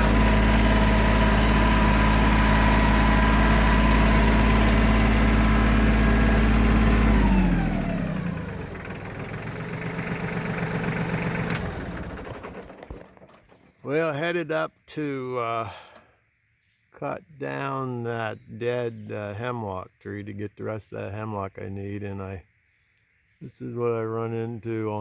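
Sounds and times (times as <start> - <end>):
vehicle engine running: 0.0 - 13.6.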